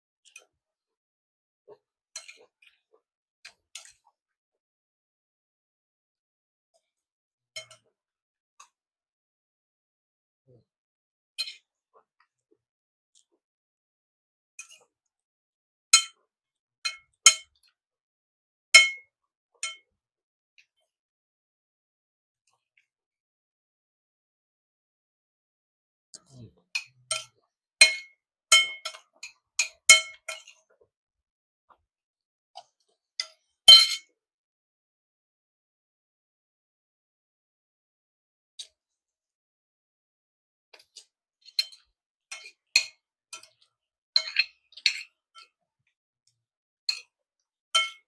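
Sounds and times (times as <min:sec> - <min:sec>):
cutlery clinking against a dish: 0:16.0 - 0:16.2, 0:16.9 - 0:17.6, 0:18.8 - 0:19.0, 0:26.8 - 0:30.6, 0:33.2 - 0:34.1, 0:41.6 - 0:43.6, 0:44.2 - 0:45.1, 0:47.8 - 0:48.0
utensil clinking against dish: 0:26.8 - 0:29.0, 0:33.7 - 0:34.0.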